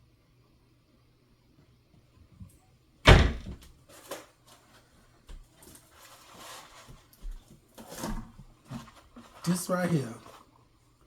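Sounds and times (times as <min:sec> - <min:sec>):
cupboard door knocking shut: 0:03.1 - 0:03.6
rustling of items handled: 0:03.5 - 0:10.6.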